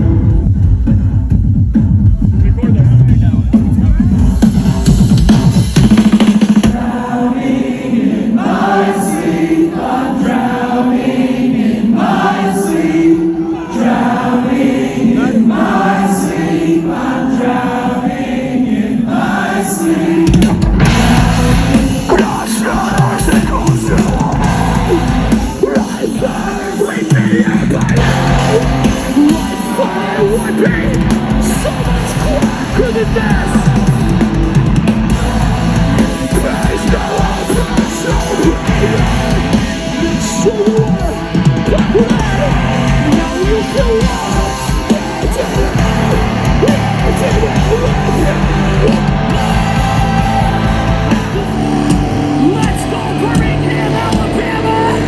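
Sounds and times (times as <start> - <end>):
live heavy rock band: 0.0 - 7.6, 19.4 - 55.0
person yelling vocals: 36.3 - 49.0.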